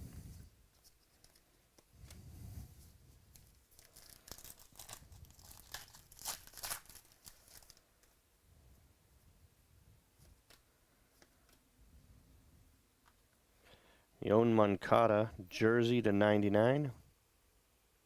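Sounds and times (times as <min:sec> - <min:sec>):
crinkling and tearing of card packaging: 0:03.3 - 0:08.2.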